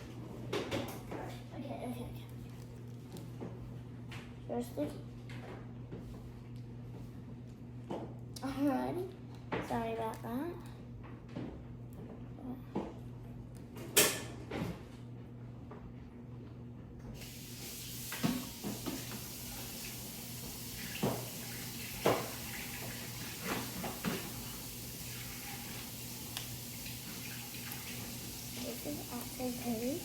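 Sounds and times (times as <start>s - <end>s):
water running from a tap: 17.2s - 30.0s.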